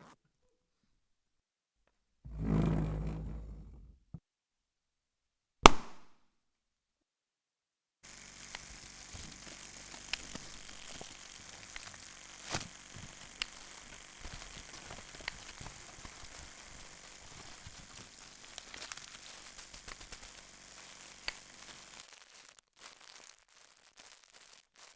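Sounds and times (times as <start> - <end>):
dense crackling with sharp snaps: 5.7 - 6.0, 8.1 - 24.9.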